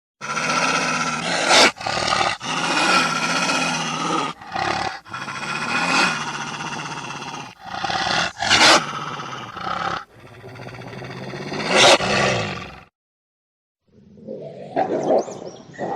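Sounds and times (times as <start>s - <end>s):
wolves growling and snarling: 0.2s - 12.9s, 14.2s - 15.9s.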